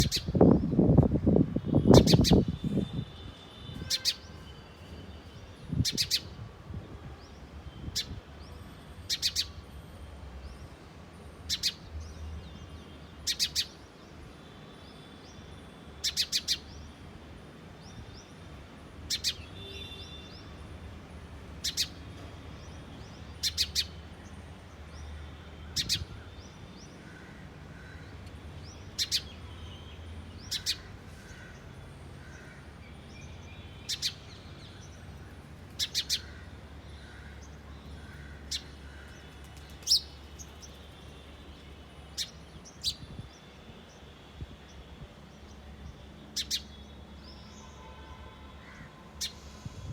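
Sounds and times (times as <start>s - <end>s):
sparrow chirping: 0.0s - 1.0s, 1.9s - 3.0s, 3.8s - 4.3s, 5.7s - 6.4s, 9.1s - 9.6s, 11.5s - 13.8s, 15.3s - 17.0s, 19.1s - 20.6s, 21.6s - 24.4s, 25.7s - 26.9s, 28.6s - 31.5s, 33.1s - 36.4s, 37.0s - 41.0s, 44.7s - 47.8s.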